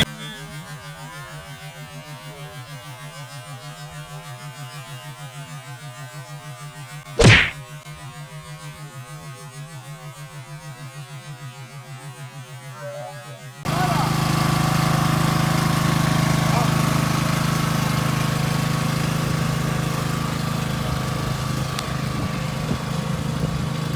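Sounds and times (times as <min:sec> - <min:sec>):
sharp whack: 0:07.2 - 0:07.6
lawn tractor engine running: 0:13.7 - 0:23.9.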